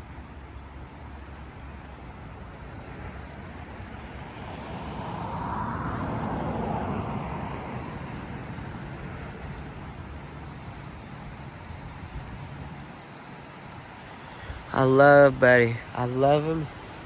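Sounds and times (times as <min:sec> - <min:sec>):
wind rumble: 0:00.0 - 0:17.0
vehicle passing by: 0:02.3 - 0:12.0.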